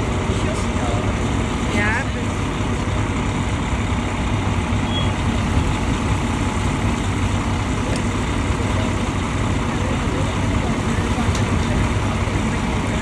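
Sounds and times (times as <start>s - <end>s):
fire engine idling: 0.0s - 13.0s.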